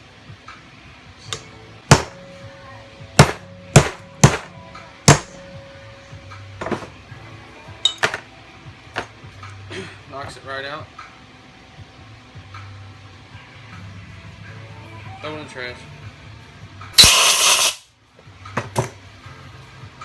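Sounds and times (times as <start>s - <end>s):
hammer striking metal: 1.3s - 2.4s, 3.2s - 5.6s, 17.0s - 17.8s.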